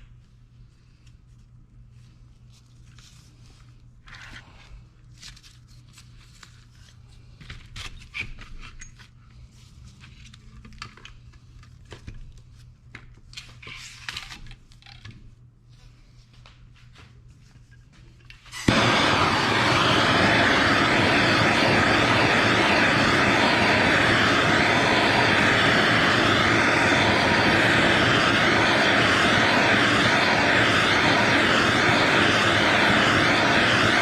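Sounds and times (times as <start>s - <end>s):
steady low hum: 18.5s - 34.0s.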